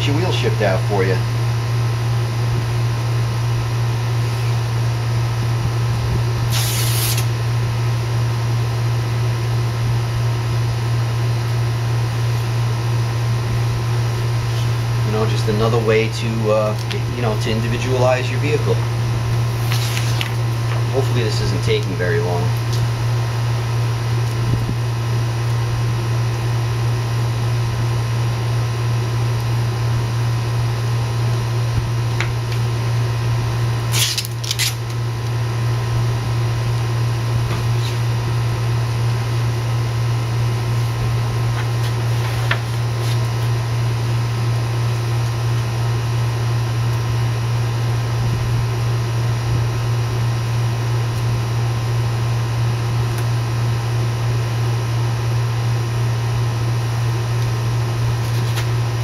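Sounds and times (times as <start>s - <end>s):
electric hum: 0.0s - 59.0s
fan blowing: 0.0s - 59.0s
short hiss: 6.5s - 7.3s.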